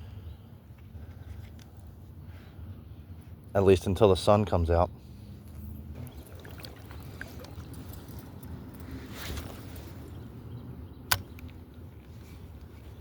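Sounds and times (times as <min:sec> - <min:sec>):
wind: 0:00.0 - 0:13.0
river water rumble: 0:05.9 - 0:10.2.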